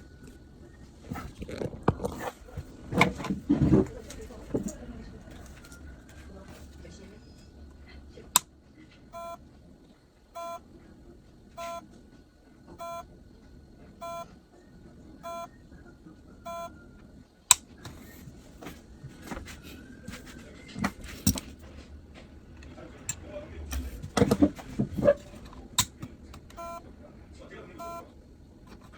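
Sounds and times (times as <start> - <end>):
hard disk drive beeps: 9.1 - 9.4, 10.3 - 10.6, 11.6 - 11.8, 12.8 - 13.1, 14.0 - 14.4, 15.2 - 17.0, 26.4 - 26.9, 27.8 - 28.1.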